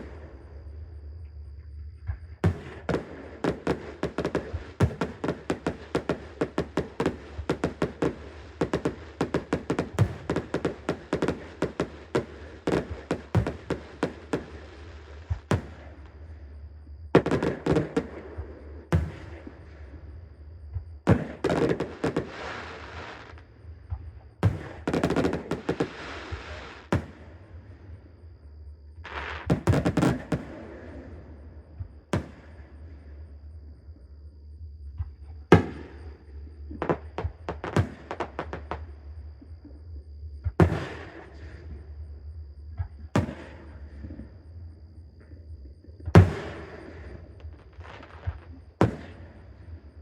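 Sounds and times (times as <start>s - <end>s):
crackling hiss of fireworks: 0.0s - 50.0s
fireworks bangs: 2.4s - 16.0s, 17.2s - 19.6s, 21.0s - 23.4s, 24.4s - 27.4s, 29.1s - 31.1s, 36.8s - 38.8s, 40.6s - 41.5s, 43.2s - 43.8s, 46.1s - 49.6s.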